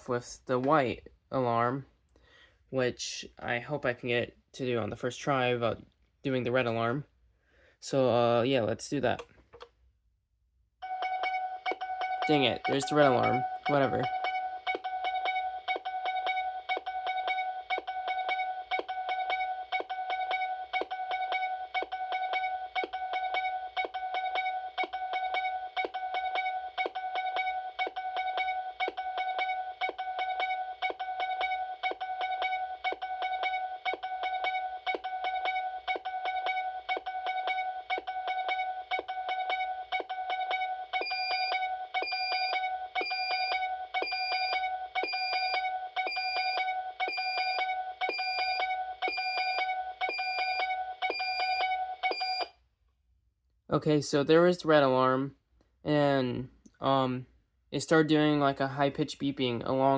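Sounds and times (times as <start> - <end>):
patient monitor alarm tones: 29.2 - 52.5
high-pitched beep: 41.0 - 52.5.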